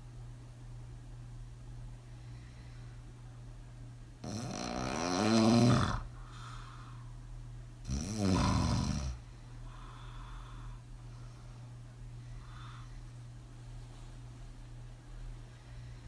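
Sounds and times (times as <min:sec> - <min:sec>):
soft breaths: 0:01.8 - 0:03.5, 0:06.0 - 0:07.4, 0:09.1 - 0:16.0
woman snoring: 0:04.2 - 0:06.1, 0:07.8 - 0:09.2.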